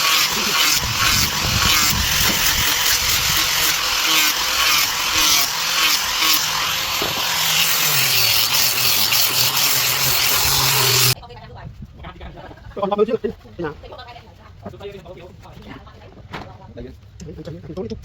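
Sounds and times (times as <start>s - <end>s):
power tool cutting wood: 0.0s - 11.2s.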